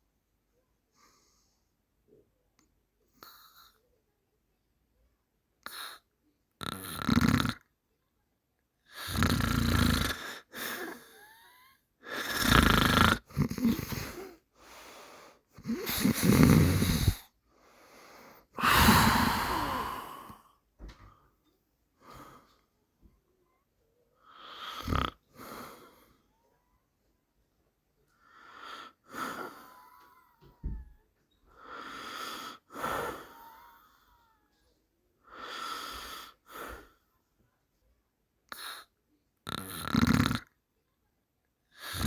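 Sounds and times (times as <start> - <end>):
person snoring loudly: 6.6 - 7.6, 9.0 - 10.3, 12.1 - 14.2, 15.6 - 17.2, 18.6 - 20.4, 24.5 - 25.2, 39.5 - 40.5, 41.8 - 42.0.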